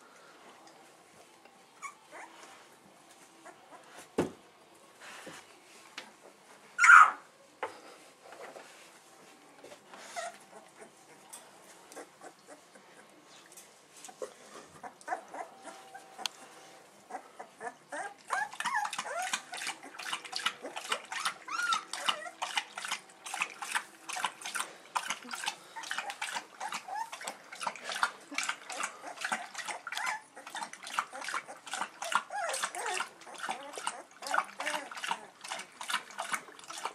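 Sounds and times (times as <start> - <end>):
puppies squeaking and whimpering: 1.8 - 2.4, 6.8 - 7.2, 10.0 - 11.3, 14.1 - 36.9.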